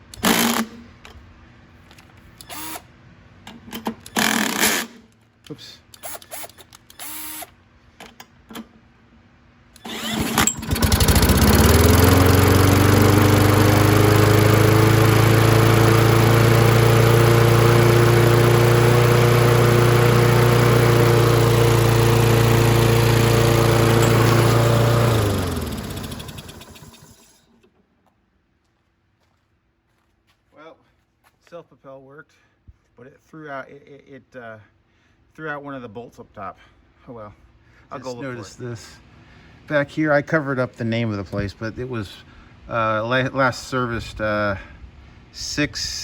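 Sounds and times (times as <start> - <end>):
lawn mower engine running: 9.8 - 27.6.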